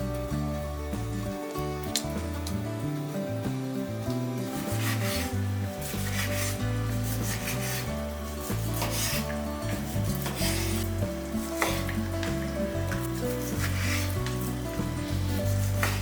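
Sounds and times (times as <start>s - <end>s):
soft background music: 0.0s - 16.0s
utensil scraping a pan: 4.4s - 16.0s
food sizzling in a pan: 4.5s - 16.0s.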